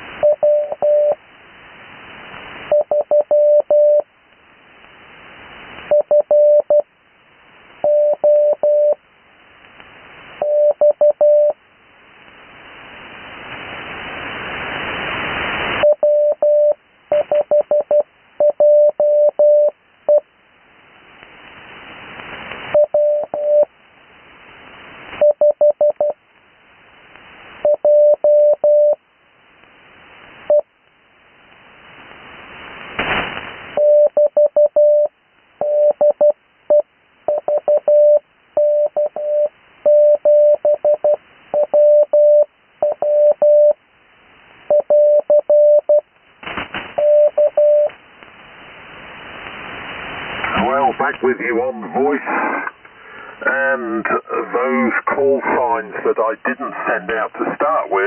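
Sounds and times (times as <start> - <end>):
radio receiver hiss: 0.0 - 58.0
morse code tone: 0.2 - 1.2, 7.9 - 9.0, 15.8 - 20.2, 33.8 - 43.8, 44.7 - 46.0, 47.0 - 47.9.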